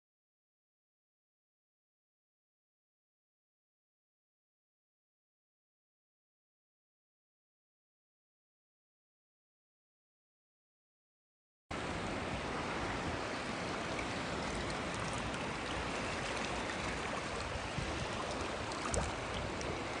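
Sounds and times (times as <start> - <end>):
sea surf: 11.7 - 20.0.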